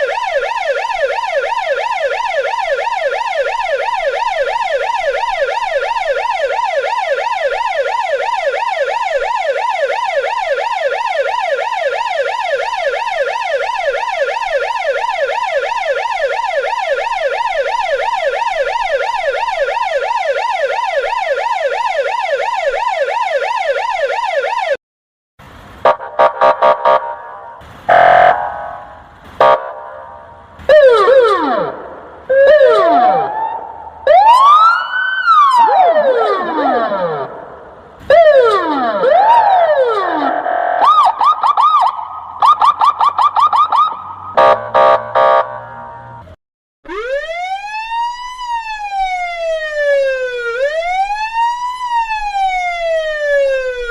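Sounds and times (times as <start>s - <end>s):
police siren yelping: 0.0s - 24.8s, 25.8s - 46.2s, 46.8s - 53.9s
quacking horn blasts: 25.9s - 30.3s, 44.3s - 46.4s.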